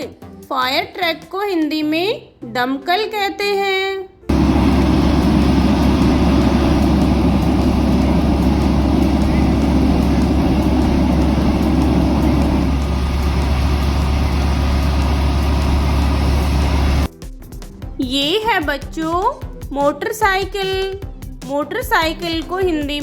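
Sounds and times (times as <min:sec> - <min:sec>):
fire truck engine rumbling: 0:04.3 - 0:17.1.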